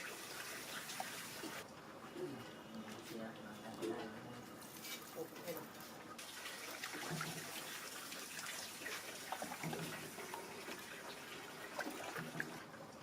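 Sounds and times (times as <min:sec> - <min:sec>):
water pouring and splashing: 0:00.0 - 0:01.6, 0:04.6 - 0:13.0.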